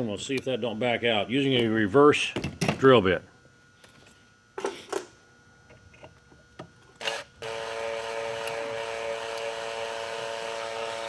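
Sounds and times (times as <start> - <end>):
electric drill whining: 7.0 - 11.0.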